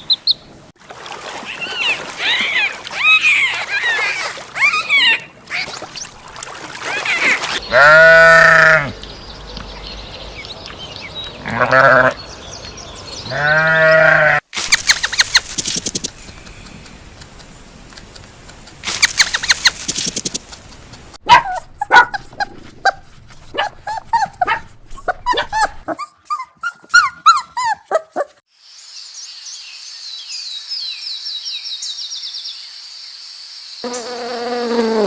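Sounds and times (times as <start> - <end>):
animal yelping calls: 1.5 - 5.8, 6.8 - 9.4, 11.4 - 12.2.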